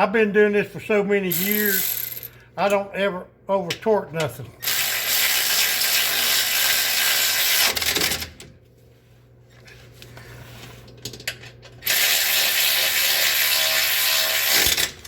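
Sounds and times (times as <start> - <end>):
electric impact wrench: 1.5 - 2.4, 4.6 - 8.4, 11.8 - 15.0.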